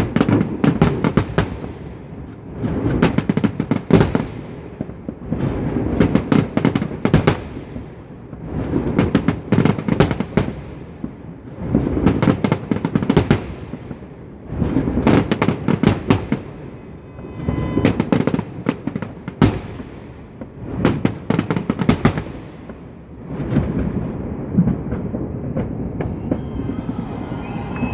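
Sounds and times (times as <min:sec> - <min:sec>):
fireworks bangs and crackling: 0:00.0 - 0:27.9
rumbling echo: 0:23.4 - 0:27.9.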